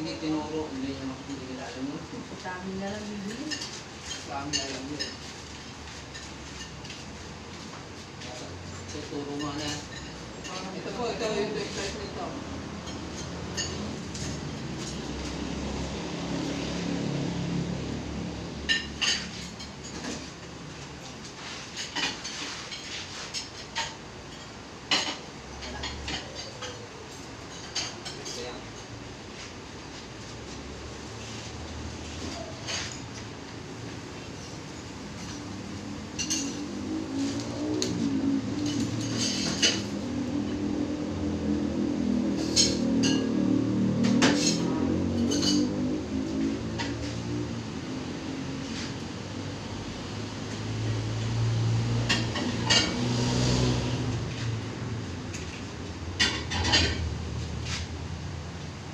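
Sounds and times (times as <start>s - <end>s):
sharp knocks and metallic clinks: 12.8s - 15.4s, 34.3s - 40.7s, 42.3s - 47.6s.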